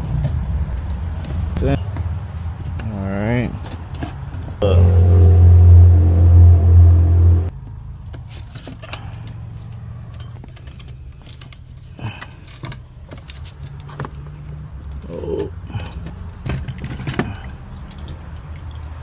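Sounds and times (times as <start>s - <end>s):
loud vehicle engine: 4.6s - 7.5s
low engine rumble: 4.6s - 7.5s.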